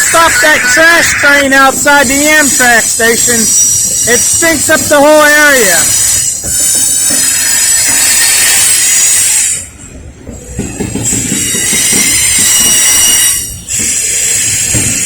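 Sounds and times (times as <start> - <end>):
steel wheels squealing on rails: 0.0 - 15.0
train rumble: 0.0 - 15.0.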